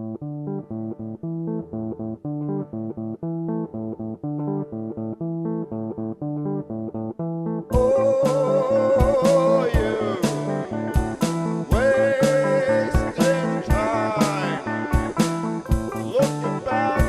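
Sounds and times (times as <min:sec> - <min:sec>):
plucked notes riff: 0:00.0 - 0:17.0
full band with drums: 0:09.0 - 0:12.4, 0:13.0 - 0:16.6.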